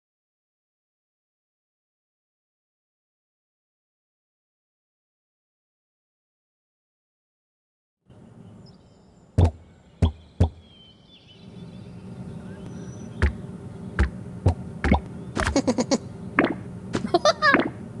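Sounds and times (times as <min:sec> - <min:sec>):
low steady hum: 0:08.1 - 0:18.0
sharp knocks and taps: 0:14.0 - 0:15.6.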